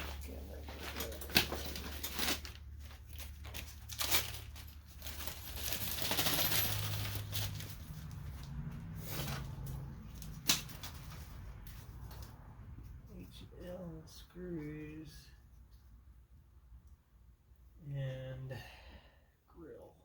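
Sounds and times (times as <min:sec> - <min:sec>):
scraping rustling noise: 0:00.0 - 0:13.8
small metal parts clinking: 0:00.7 - 0:07.8.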